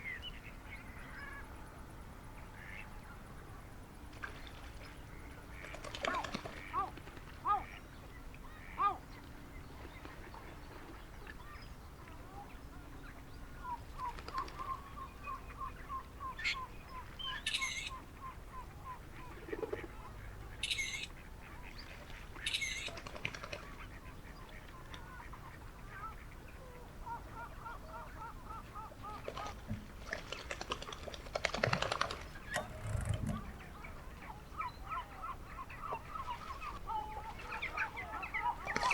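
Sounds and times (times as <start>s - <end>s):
duck and ducklings calling: 32.5s - 38.9s.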